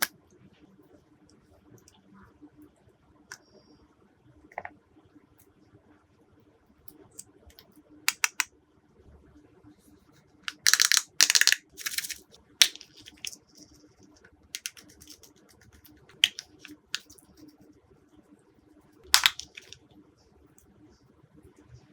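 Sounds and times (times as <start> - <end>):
slime clicking and popping: 8.1 - 8.5, 10.5 - 13.4, 14.6 - 15.3, 16.2 - 17.2, 19.2 - 19.8.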